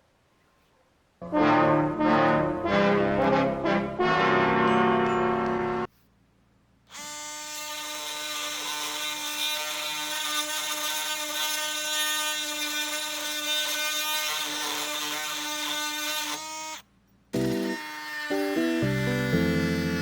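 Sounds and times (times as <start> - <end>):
oscillating multi-tool cutting wood: 6.9 - 16.8, 17.4 - 20.0.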